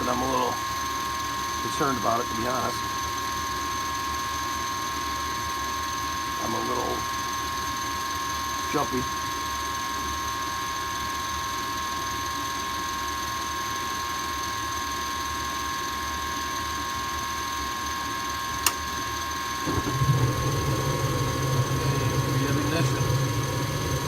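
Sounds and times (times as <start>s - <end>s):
burners igniting with low hum: 0.0s - 0.9s, 1.6s - 2.8s, 6.4s - 7.1s, 18.2s - 24.0s
motor running with high whine: 0.0s - 24.0s
sharp click: 18.6s - 18.8s.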